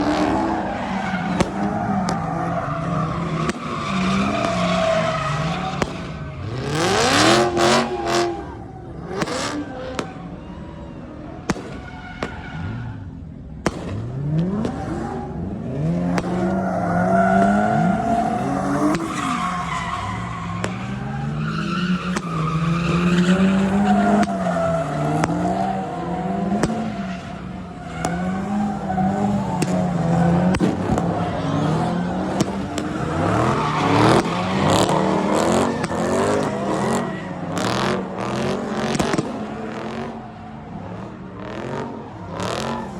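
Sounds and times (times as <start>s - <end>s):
car engine revving hard: 0.0s - 10.0s, 13.7s - 40.2s, 40.8s - 42.9s
tyres skidding and squealing: 0.0s - 42.9s
sharp exhaust pops: 11.4s - 12.6s, 13.6s - 15.0s, 26.4s - 31.2s.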